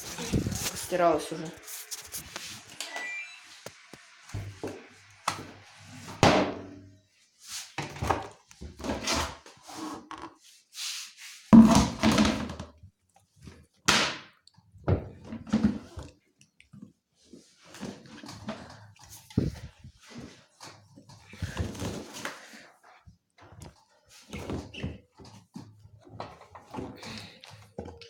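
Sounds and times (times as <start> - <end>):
rustling: 0.0 - 2.7.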